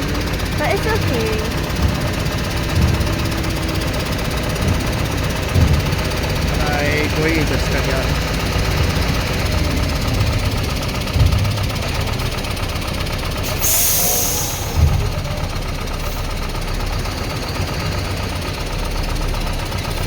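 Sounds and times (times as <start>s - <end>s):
heavy machinery engine running: 0.0s - 20.0s
heavy thumps: 0.4s - 13.2s.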